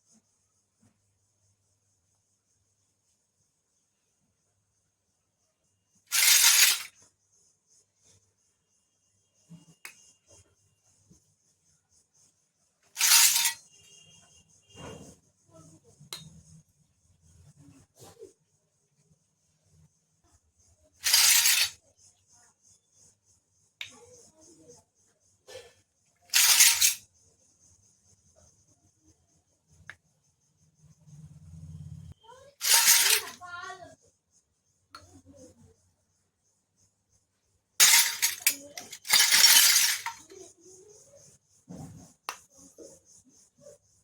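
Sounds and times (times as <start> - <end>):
light clicks of toy pieces: 6.1 - 7.0, 13.0 - 13.6, 16.0 - 16.4, 21.0 - 21.8, 23.8 - 24.3, 26.3 - 27.0, 32.6 - 33.5, 35.0 - 35.6, 37.8 - 40.5.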